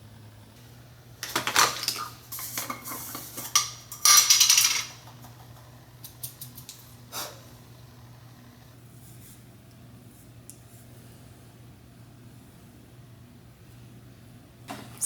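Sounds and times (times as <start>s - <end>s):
small hard objects clattering: 1.2s - 5.2s.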